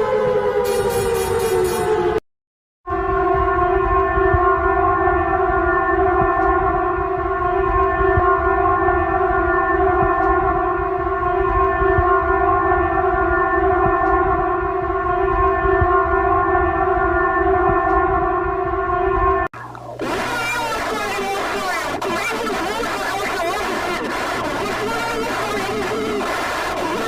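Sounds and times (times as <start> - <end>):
steady siren: 0.0 - 2.2, 2.8 - 27.0
low rumble: 2.9 - 20.3.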